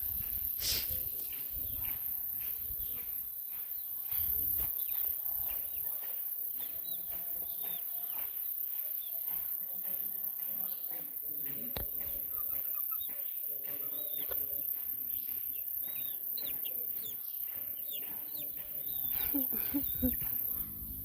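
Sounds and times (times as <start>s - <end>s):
birds chirping: 0.1s - 21.0s
high-pitched insect drone: 18.8s - 20.9s.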